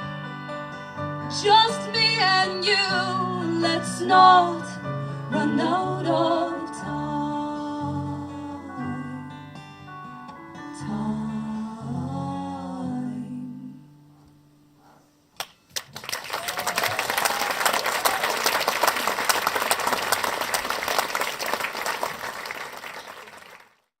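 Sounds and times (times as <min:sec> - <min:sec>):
person singing: 0:01.3 - 0:09.4, 0:10.7 - 0:13.8
audience applause: 0:15.8 - 0:23.9.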